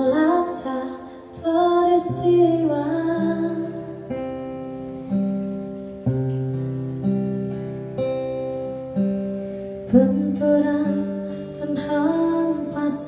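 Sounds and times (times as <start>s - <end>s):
acoustic guitar strumming chords: 0.0s - 13.0s.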